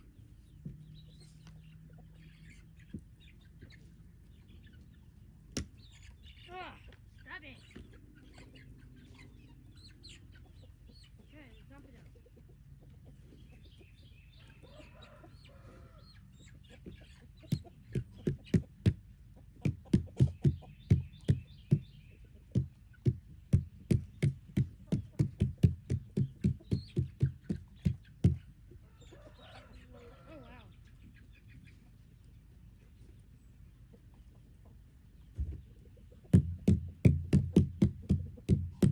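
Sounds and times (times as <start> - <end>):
chickens clucking: 0.0 - 38.9
loud sharp knocks on container: 36.4 - 38.9.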